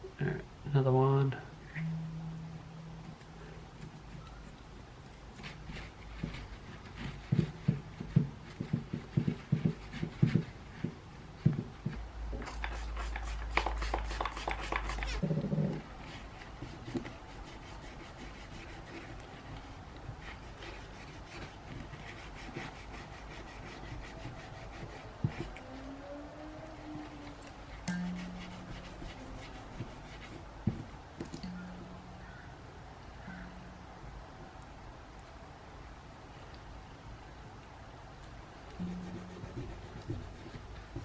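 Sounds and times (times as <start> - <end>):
rubbing strokes scrubbing part: 3.1 - 11.6, 12.4 - 31.0, 38.8 - 41.0.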